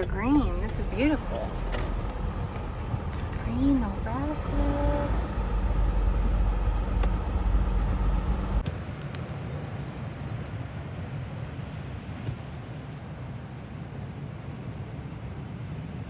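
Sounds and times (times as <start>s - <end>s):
vehicle road noise rumble: 0.0s - 8.6s.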